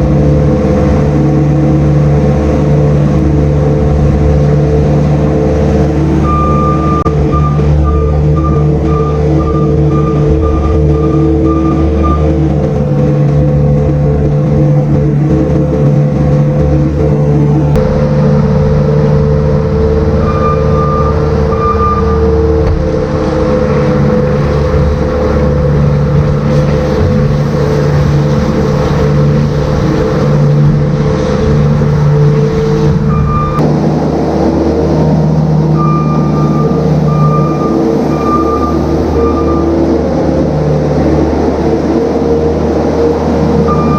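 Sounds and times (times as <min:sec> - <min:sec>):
farm machine engine running: 0:00.0 - 0:43.9
reversing alarm beeping: 0:06.1 - 0:12.6, 0:19.6 - 0:22.7, 0:32.9 - 0:33.7, 0:35.6 - 0:40.5, 0:43.6 - 0:43.9.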